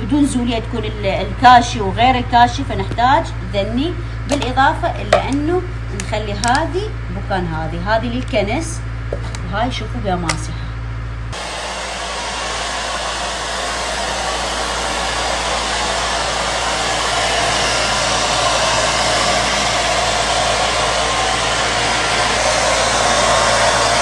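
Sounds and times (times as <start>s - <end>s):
floor cleaner motor and suction: 11.4s - 24.0s.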